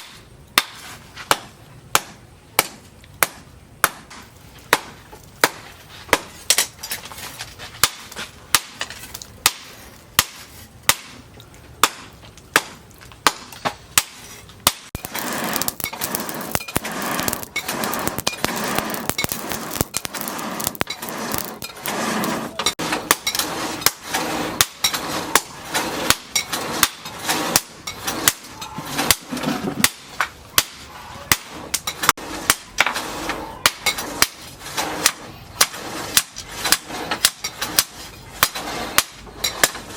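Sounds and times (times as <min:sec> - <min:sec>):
hammer striking steel: 0:07.8 - 0:11.2, 0:11.8 - 0:33.0
steady rushing noise: 0:15.0 - 0:24.6.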